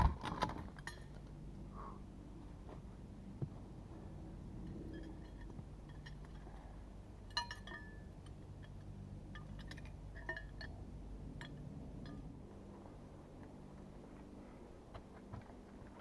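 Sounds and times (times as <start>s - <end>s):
faint low hum: 0.0s - 16.0s
light ringing clinks: 0.7s - 1.4s, 4.6s - 12.4s.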